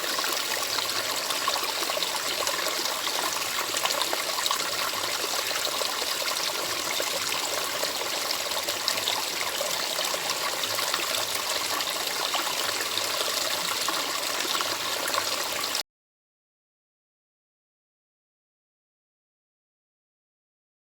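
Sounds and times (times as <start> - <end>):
stream trickling and splashing: 0.0 - 15.8.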